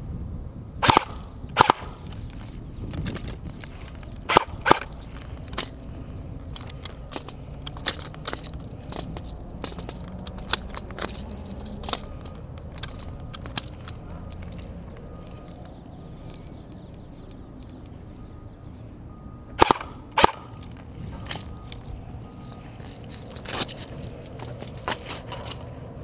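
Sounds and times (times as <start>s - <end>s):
low steady rumble: 0.0s - 26.0s
airsoft gunshots: 0.8s - 2.0s, 4.3s - 4.9s, 19.6s - 20.6s.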